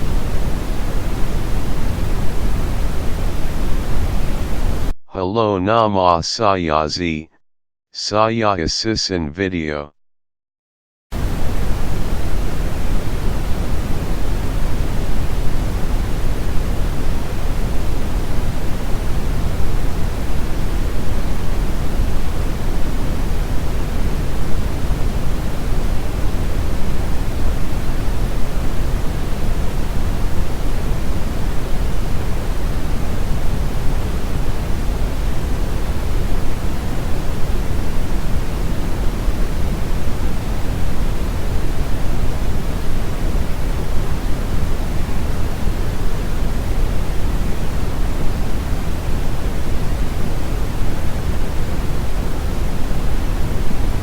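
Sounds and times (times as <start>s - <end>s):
pink noise hiss: 11.2s - 54.0s.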